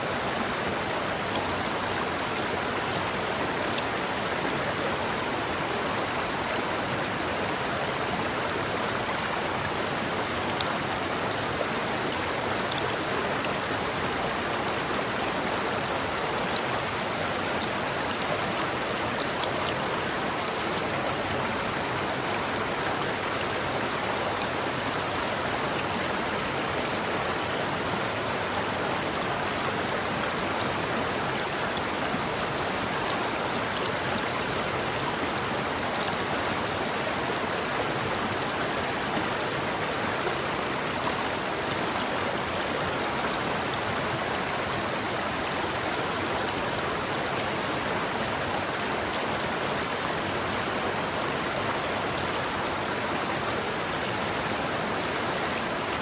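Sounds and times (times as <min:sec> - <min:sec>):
river water flowing: 0:00.0 - 0:56.0.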